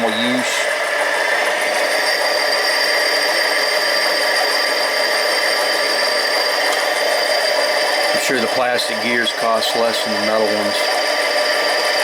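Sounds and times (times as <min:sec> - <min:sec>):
lathe motor whining: 0:00.0 - 0:12.0.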